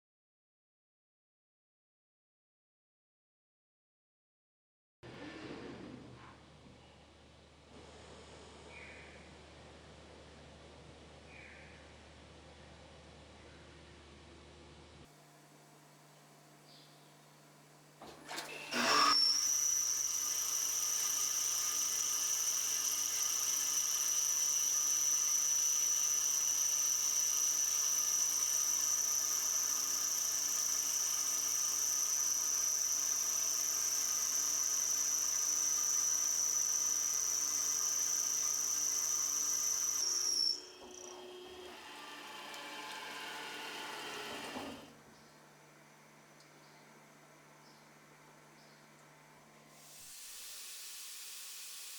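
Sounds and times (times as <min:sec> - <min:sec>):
spindle winding down: 0:18.0 - 0:44.9
milling machine high-pitched whine: 0:18.3 - 0:44.9, 0:49.8 - 0:51.9.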